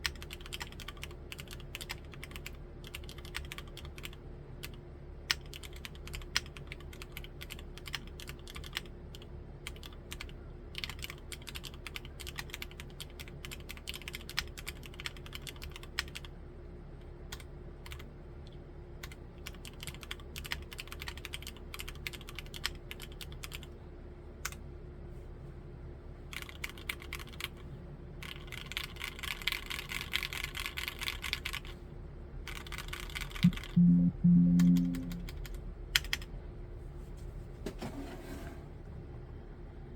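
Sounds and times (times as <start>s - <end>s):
typing on mechanical keyboard: 0.0s - 16.3s, 17.3s - 18.1s, 19.0s - 23.7s, 26.3s - 27.6s, 28.2s - 31.7s, 32.5s - 33.8s, 36.0s - 36.3s.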